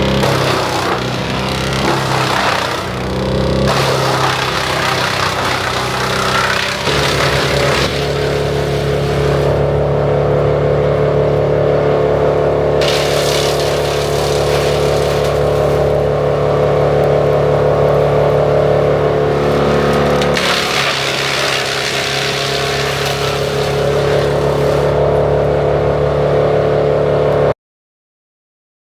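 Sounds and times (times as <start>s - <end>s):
harsh grinding: 0.0s - 10.0s, 12.6s - 25.2s
wood chipper engine drone: 0.0s - 27.6s.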